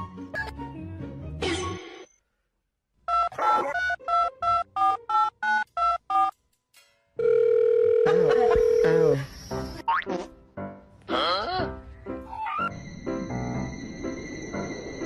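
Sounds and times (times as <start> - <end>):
loud steady phone tone: 7.2 - 9.2.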